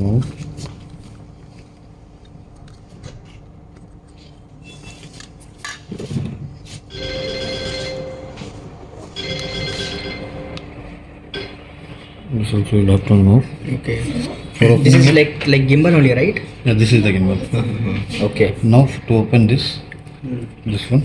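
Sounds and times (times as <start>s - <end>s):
phone ringing: 6.9s - 11.0s.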